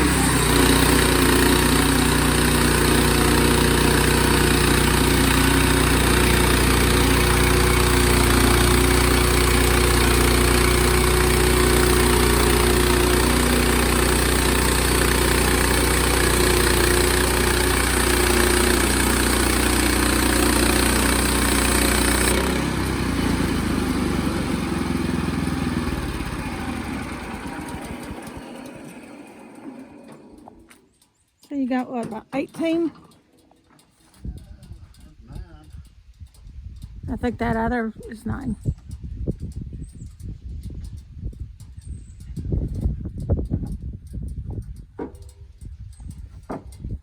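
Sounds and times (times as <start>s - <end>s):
sawmill engine running: 0.0s - 31.0s.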